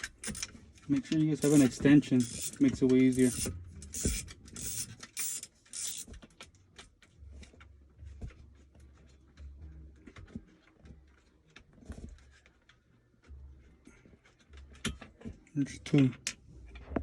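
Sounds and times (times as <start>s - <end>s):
ratchet clicking: 0.0s - 0.6s, 1.2s - 6.2s.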